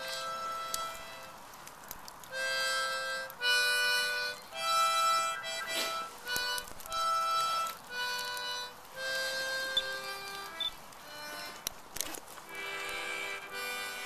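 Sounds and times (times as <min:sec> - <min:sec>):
held music chords: 0:02.3 - 0:11.7.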